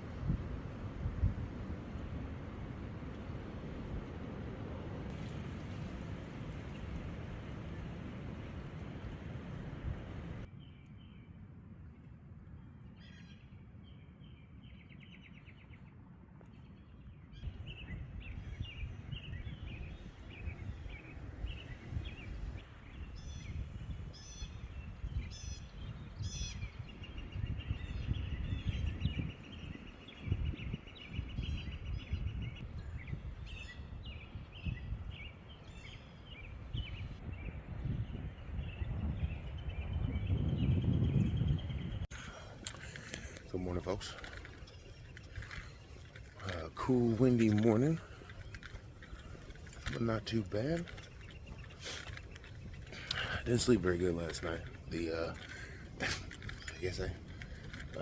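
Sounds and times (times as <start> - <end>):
wind buffeting microphone: 0.0 - 10.5, 17.2 - 58.0
birds chirping and trilling: 12.6 - 58.0.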